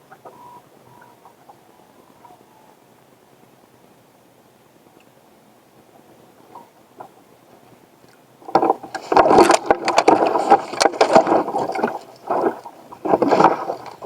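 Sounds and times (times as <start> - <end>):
scraping and knocks in plastic boat: 8.4 - 14.0.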